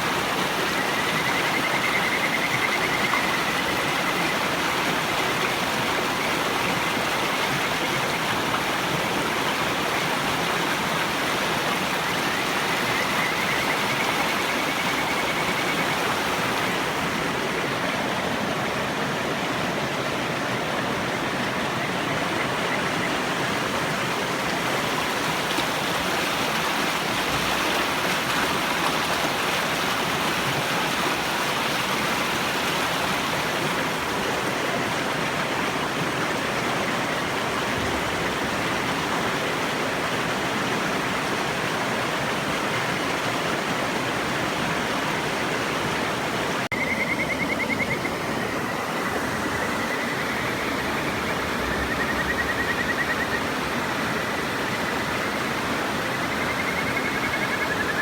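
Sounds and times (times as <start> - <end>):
river rushing: 0.0 - 58.0
frog trilled whistle call: 46.7 - 48.6, 49.5 - 53.5.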